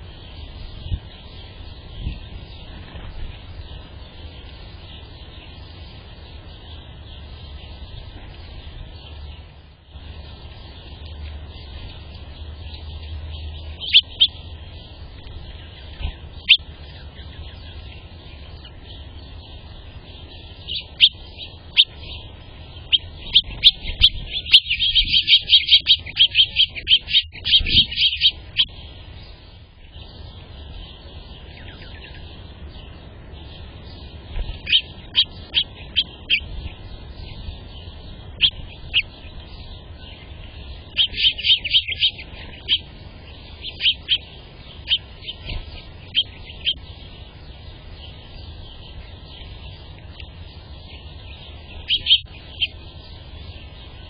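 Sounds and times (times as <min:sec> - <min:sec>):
small birds chirping: 0:00.0 - 0:54.0
steady high hiss: 0:00.0 - 0:54.0.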